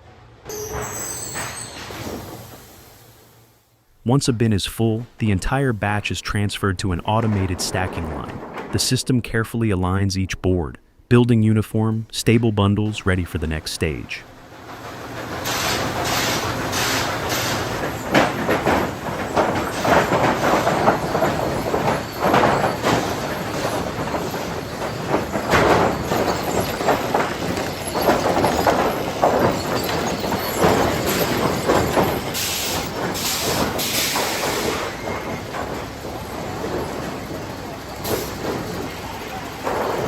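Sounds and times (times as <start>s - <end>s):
wooden boards knocking on machinery: 17.7s - 33.8s.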